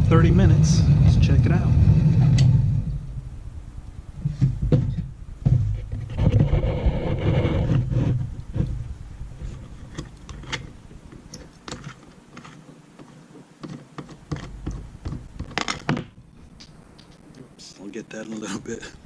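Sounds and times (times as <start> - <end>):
rock tumbler motor hum: 0.0 - 15.9
clicks and knocks of tumbler drum: 4.2 - 16.2.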